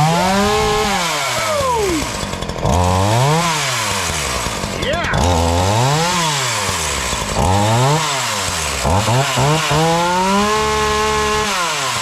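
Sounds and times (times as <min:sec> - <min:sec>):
chainsaw engine revving: 0:00.0 - 0:12.0.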